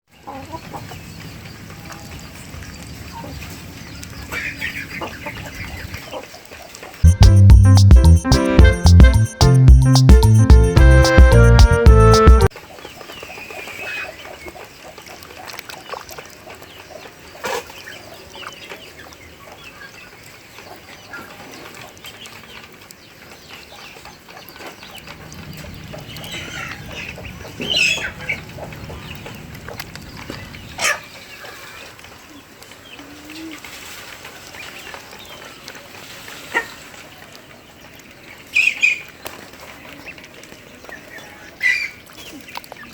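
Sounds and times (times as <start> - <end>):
ducklings peeping: 0.2 - 8.0, 37.5 - 42.9.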